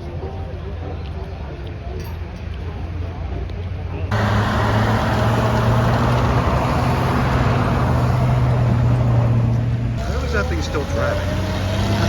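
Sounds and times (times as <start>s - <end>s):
heavy vehicle engine droning: 4.0s - 12.0s.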